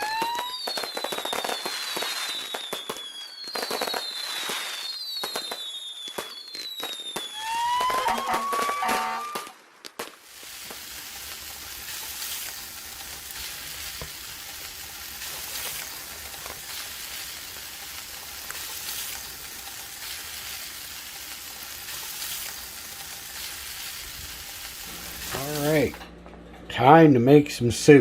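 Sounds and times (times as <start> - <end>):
faint crackles: 6.2 - 26.5
food sizzling in a pan: 10.2 - 26.1.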